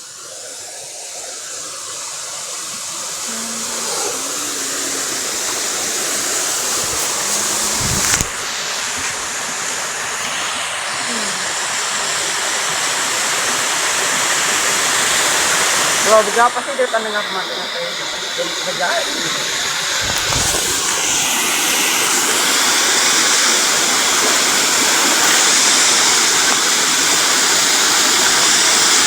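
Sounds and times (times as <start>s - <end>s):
waterfall rushing: 0.0s - 29.0s.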